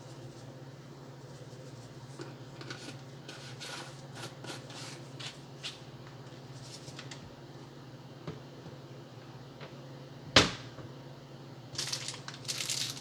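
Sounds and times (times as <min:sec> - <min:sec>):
plastic packaging crinkling: 0:11.8 - 0:13.0.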